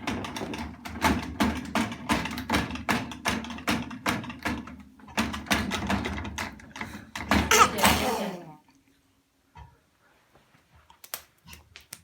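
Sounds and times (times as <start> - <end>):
dishwasher racks rattling: 7.2 - 8.3.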